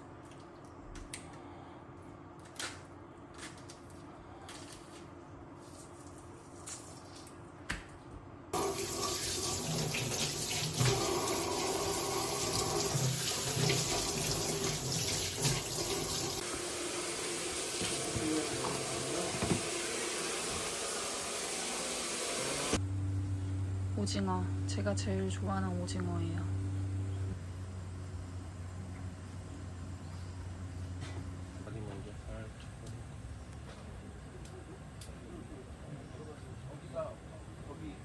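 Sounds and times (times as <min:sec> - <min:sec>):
water tap running: 0:08.6 - 0:22.8.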